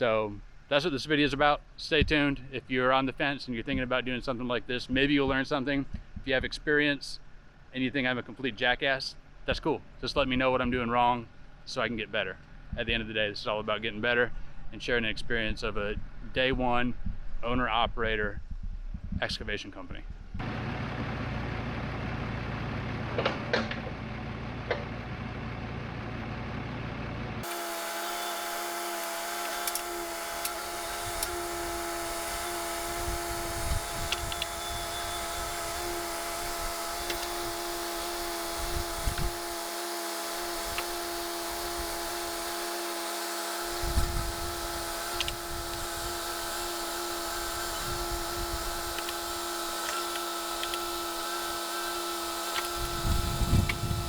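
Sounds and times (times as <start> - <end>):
mini excavator whine: 20.4 - 54.0.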